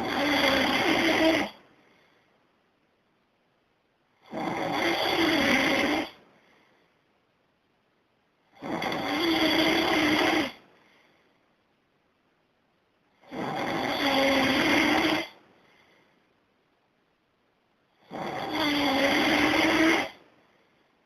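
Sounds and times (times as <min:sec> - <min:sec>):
person snoring loudly: 0:00.0 - 0:01.6, 0:04.2 - 0:06.2, 0:08.6 - 0:10.6, 0:13.2 - 0:15.4, 0:18.0 - 0:20.2
faint breath out: 0:01.7 - 0:02.5, 0:06.2 - 0:07.1, 0:10.6 - 0:11.6, 0:15.5 - 0:16.4.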